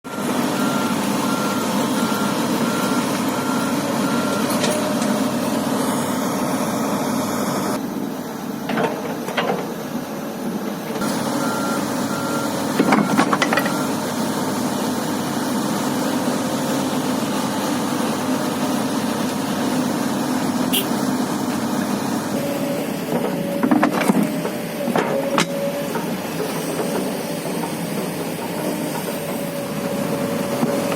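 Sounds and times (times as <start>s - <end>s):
reversing alarm beeping: 0.1s - 6.2s, 11.4s - 14.0s
diesel engine running: 0.1s - 8.7s, 9.8s - 30.9s.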